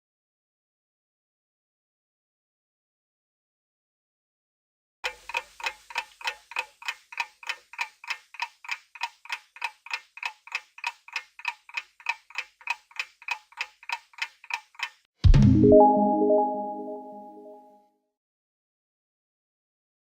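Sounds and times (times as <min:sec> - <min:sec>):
clock ticking timer: 0:05.0 - 0:15.1.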